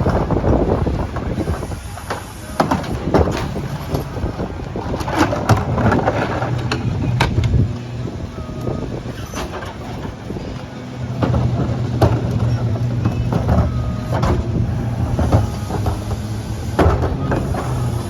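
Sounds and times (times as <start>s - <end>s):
garbage truck engine rumble: 0.0s - 18.0s
sharp knocks and clanks: 9.2s - 18.0s.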